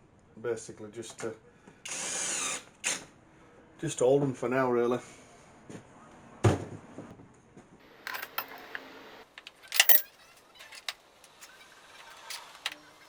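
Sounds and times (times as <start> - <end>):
metal spanners clinking: 8.1 - 13.0.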